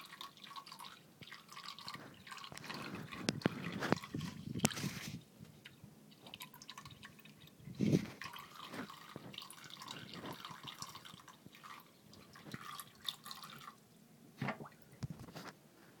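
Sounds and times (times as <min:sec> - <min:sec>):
water dripping from a tap: 0:00.0 - 0:04.0, 0:06.2 - 0:07.6, 0:08.2 - 0:13.8
cat lapping water: 0:00.0 - 0:04.8, 0:06.1 - 0:13.8.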